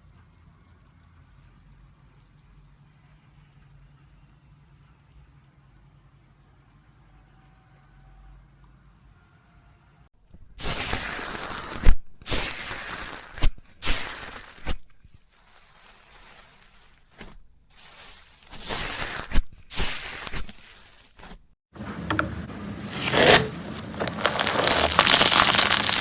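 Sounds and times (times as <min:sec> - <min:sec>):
slime crackling by hand: 0:23.0 - 0:26.0
slime popping: 0:24.0 - 0:26.0.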